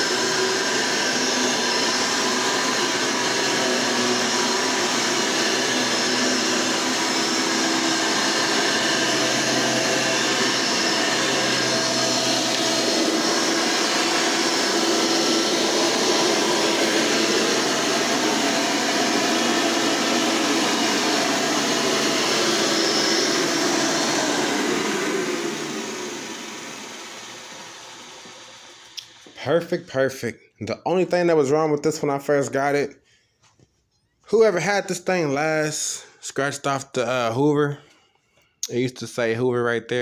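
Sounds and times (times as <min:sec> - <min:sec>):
upright vacuum cleaner running: 0:00.0 - 0:30.0.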